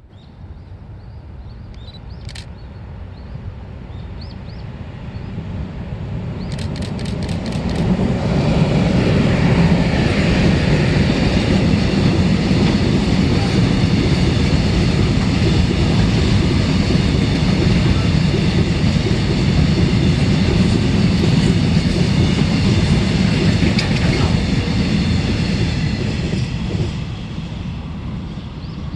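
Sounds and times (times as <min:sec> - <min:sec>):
freight train wheels rumbling: 0:00.7 - 0:28.9
rail clicks: 0:06.4 - 0:08.0, 0:10.4 - 0:27.1.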